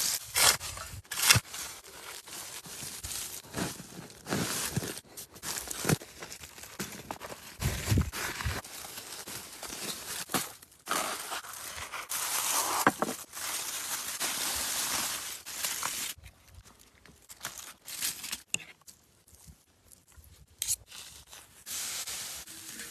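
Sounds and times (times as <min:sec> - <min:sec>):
plastic packaging crinkling: 0:01.6 - 0:16.2
items being set down: 0:12.8 - 0:13.2.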